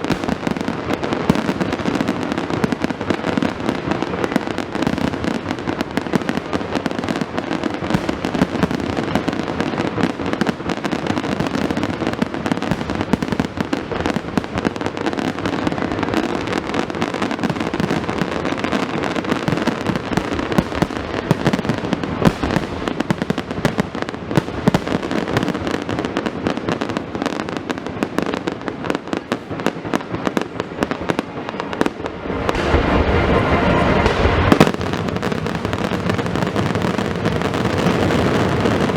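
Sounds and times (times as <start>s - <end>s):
fireworks bangs and crackling: 0.0s - 38.9s
deep rumble: 31.2s - 36.2s.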